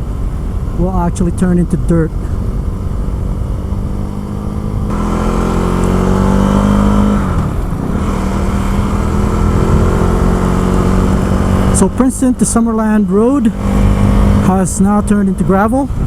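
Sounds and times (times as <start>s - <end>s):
motorcycle engine pulling: 2.2s - 14.9s.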